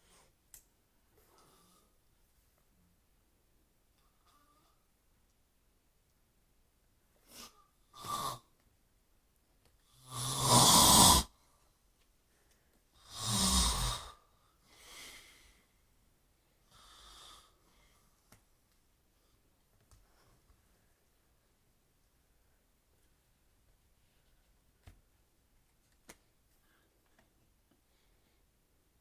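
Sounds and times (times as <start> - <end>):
man snoring: 8.0 - 8.4, 10.0 - 11.3, 13.0 - 14.2.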